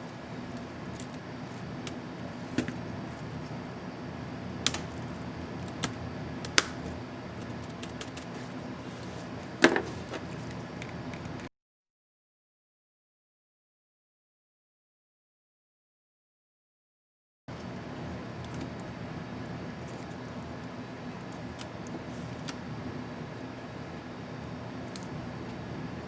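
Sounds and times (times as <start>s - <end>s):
steady low hum: 0.0s - 11.5s, 17.5s - 26.0s.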